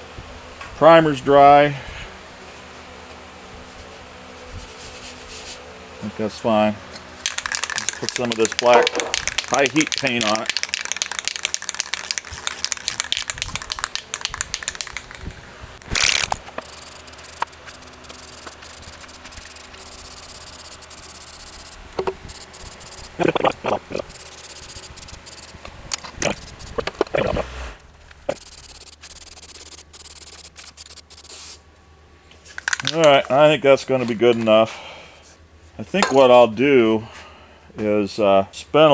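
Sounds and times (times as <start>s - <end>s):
aerosol can rattling: 7.2s - 23.2s, 24.1s - 25.6s, 26.2s - 26.7s, 28.3s - 31.4s, 32.5s - 33.2s
spray paint hissing: 7.2s - 23.3s, 24.1s - 25.6s, 26.2s - 27.5s, 28.3s - 31.6s.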